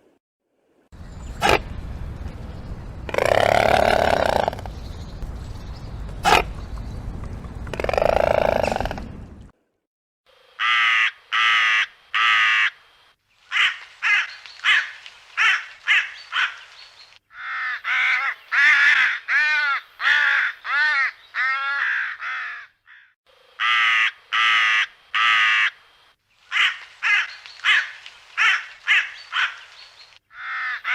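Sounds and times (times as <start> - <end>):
crow cawing: 10.6 - 12.8, 13.5 - 16.6, 17.3 - 25.8, 26.5 - 29.7, 30.3 - 30.9.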